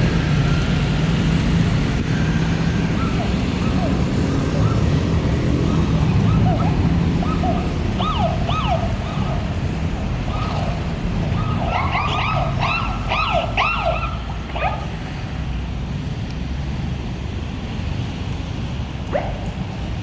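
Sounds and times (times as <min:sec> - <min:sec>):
street traffic rumble: 0:00.0 - 0:20.0
small dog yelping: 0:19.1 - 0:19.5.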